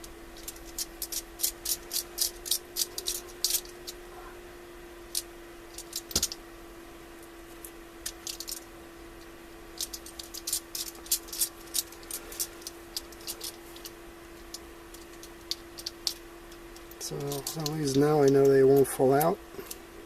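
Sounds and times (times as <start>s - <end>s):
faint hum: 0.0s - 20.0s.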